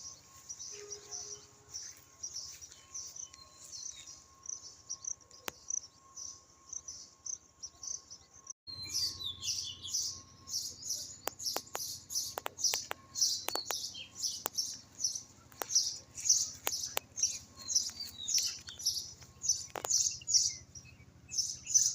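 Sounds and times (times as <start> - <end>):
small birds chirping: 0.0 - 21.9
sharp clicks: 11.2 - 14.7, 16.5 - 20.2.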